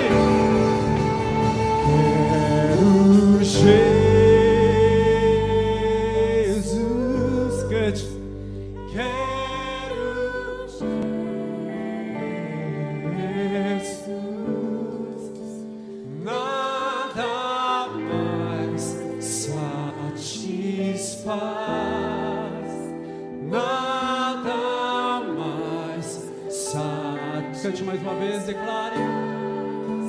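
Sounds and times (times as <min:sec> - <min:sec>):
people singing: 0:00.0 - 0:08.2, 0:08.9 - 0:30.0
band playing sustained chords: 0:00.0 - 0:14.1.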